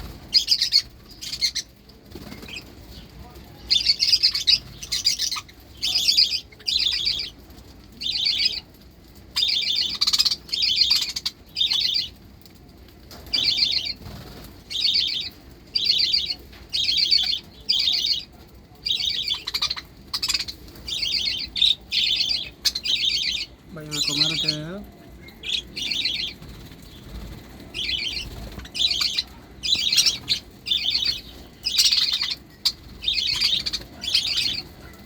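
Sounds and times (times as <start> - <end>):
budgerigars calling: 18.9 - 24.8, 27.8 - 34.7.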